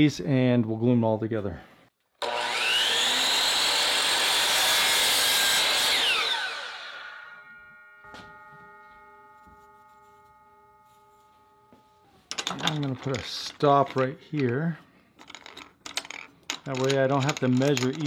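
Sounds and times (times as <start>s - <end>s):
saw cutting through wood: 2.2s - 7.6s
power saw motor whine: 2.2s - 10.0s
faint steady ringing: 7.0s - 14.4s.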